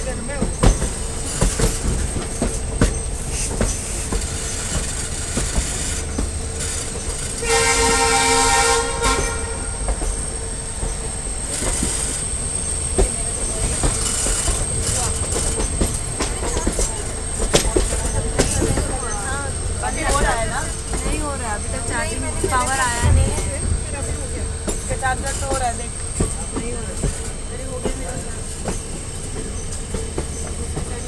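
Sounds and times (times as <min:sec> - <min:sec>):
train rumbling on track: 0:00.0 - 0:31.0
wheels clicking over rail joints: 0:00.0 - 0:31.0
train horn blast: 0:07.3 - 0:10.1.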